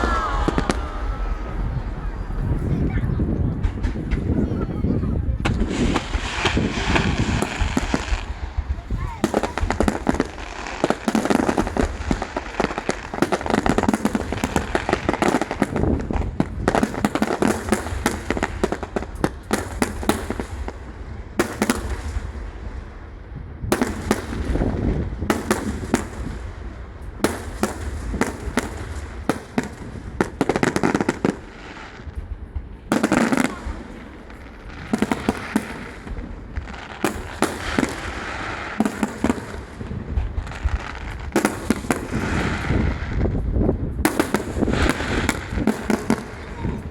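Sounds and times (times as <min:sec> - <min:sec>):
fireworks crackling pops: 0:00.0 - 0:22.6, 0:23.7 - 0:46.9
fireworks heavy bangs: 0:00.0 - 0:46.9.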